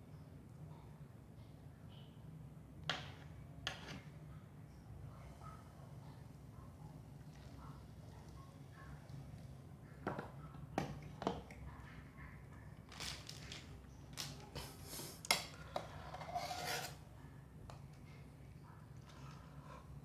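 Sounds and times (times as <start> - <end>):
scraping and rubbing noises: 14.3 - 17.1.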